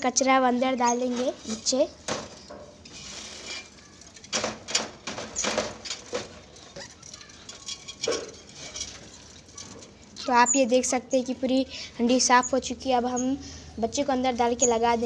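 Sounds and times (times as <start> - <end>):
rustling scrapes of nest litter: 2.9 - 3.9.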